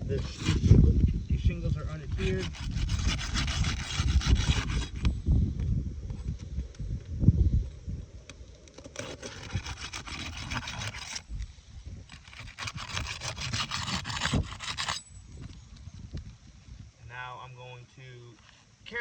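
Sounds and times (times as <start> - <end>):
roof shingles scraping and crackling: 8.6 - 11.2.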